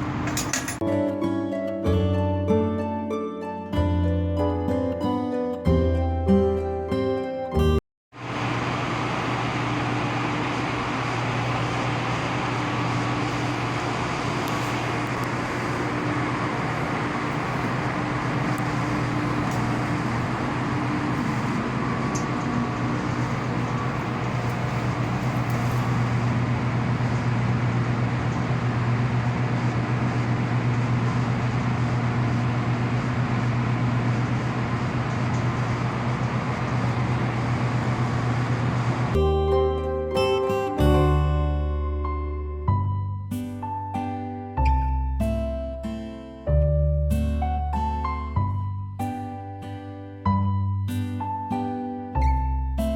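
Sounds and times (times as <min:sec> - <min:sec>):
power cables humming: 0:00.0 - 0:00.8, 0:08.2 - 0:39.6.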